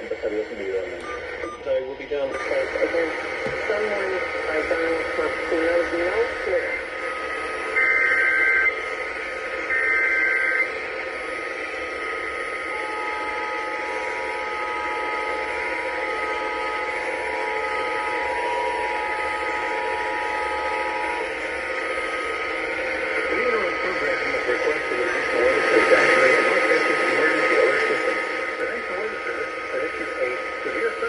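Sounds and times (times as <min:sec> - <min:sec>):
screeching digital data bursts: 0:06.7 - 0:16.8
two-tone attention signal: 0:07.0 - 0:08.8, 0:09.6 - 0:10.7.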